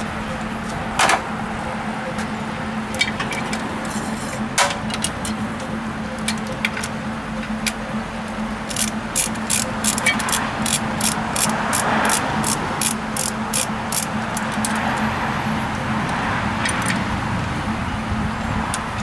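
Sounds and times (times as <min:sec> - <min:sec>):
sharp metallic clicks and knocks: 0:02.9 - 0:15.1, 0:15.7 - 0:17.6.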